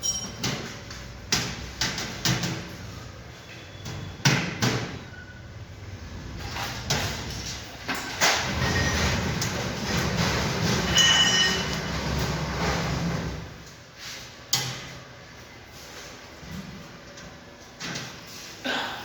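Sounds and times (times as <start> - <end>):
sharp knocks and clatter: 0.0 - 2.7.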